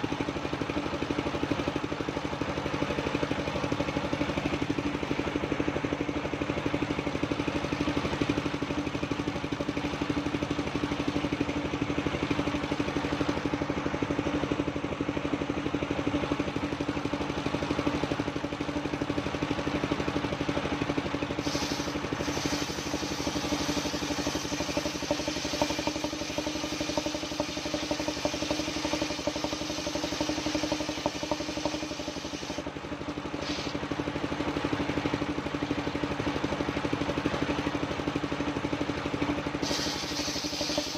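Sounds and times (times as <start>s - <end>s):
engine-driven sawmill running: 0.0s - 40.9s
saw blade rasping through timber: 21.4s - 32.6s.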